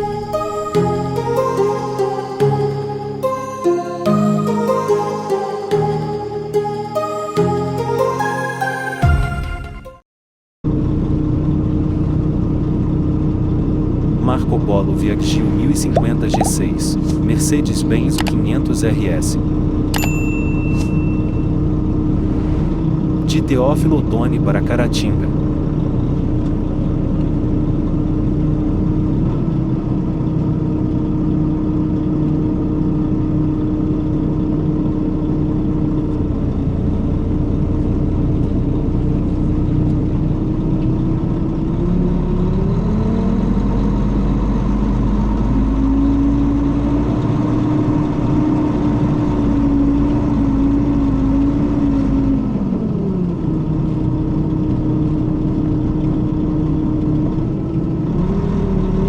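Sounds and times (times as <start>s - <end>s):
diesel engine running and revving: 10.7s - 19.9s, 21.3s - 59.0s.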